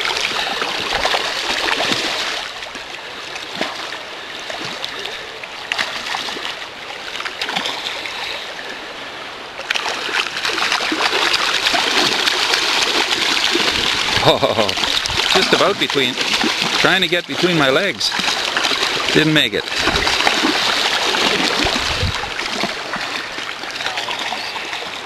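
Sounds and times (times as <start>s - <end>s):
small splashes: 0.0s - 8.8s, 9.6s - 25.0s
river water flowing and splashing: 0.0s - 25.0s.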